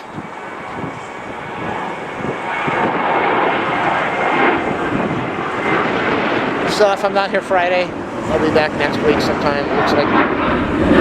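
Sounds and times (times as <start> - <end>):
jet airliner engine roar: 0.0 - 11.0.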